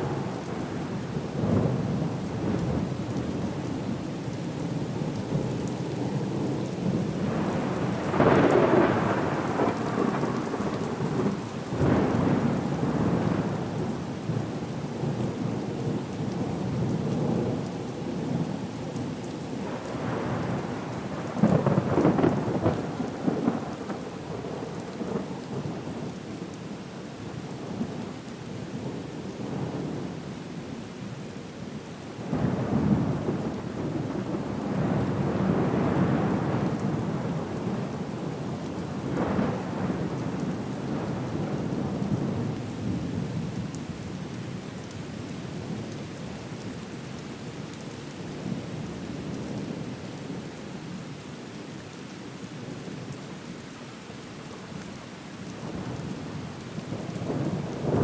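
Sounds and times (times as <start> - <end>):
steady rain: 0.0 - 58.0
rolling thunder: 7.2 - 13.6.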